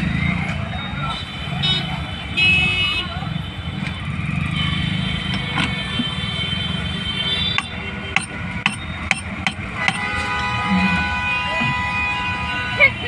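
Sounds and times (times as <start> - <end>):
steady background din: 3.3 - 13.0
sharp hammer taps: 7.5 - 10.2.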